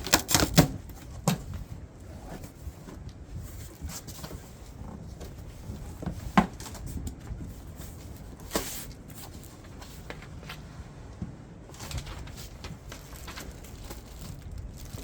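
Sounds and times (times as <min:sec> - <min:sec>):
packaging rustling: 0:00.0 - 0:00.9, 0:11.7 - 0:15.0.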